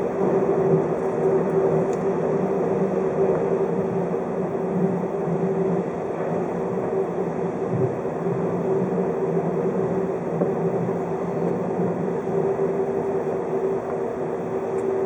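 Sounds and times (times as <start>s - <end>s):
constant low hum: 0.0s - 15.0s
train wheels rumbling on rail: 0.0s - 15.0s.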